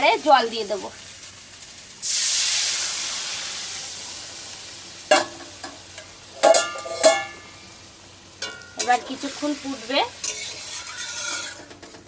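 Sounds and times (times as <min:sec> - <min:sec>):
loud sizzle in a pan: 0:00.0 - 0:12.0
utensil clinking on a pan: 0:05.1 - 0:07.5, 0:08.4 - 0:09.3, 0:10.2 - 0:12.0.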